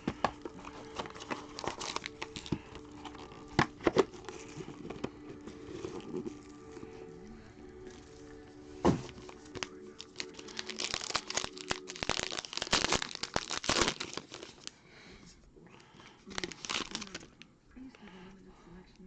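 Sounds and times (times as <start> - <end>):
plastic wrapping crinkling and tearing: 0.0 - 7.1, 9.0 - 14.8, 16.2 - 17.5.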